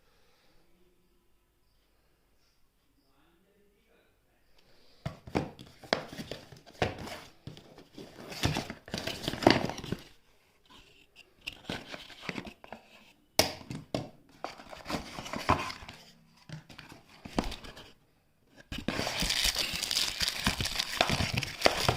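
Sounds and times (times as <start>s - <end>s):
plastic packaging crinkling: 18.7s - 21.9s.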